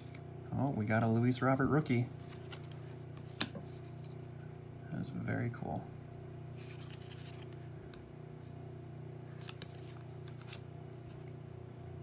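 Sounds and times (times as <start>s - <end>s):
steady low hum: 0.0s - 12.0s
cards rustling and clicking: 2.2s - 4.3s, 6.5s - 8.1s, 9.3s - 11.4s.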